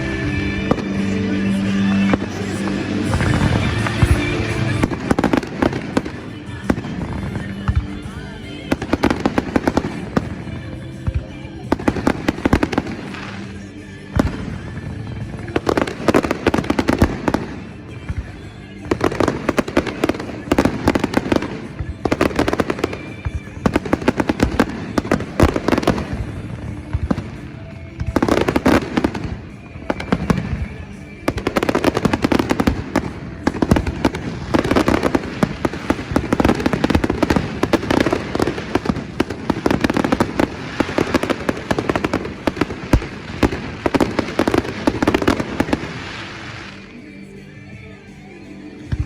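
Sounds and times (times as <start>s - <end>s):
fireworks bangs and crackles: 0.0s - 47.1s, 48.8s - 49.0s
song playing: 0.0s - 49.0s.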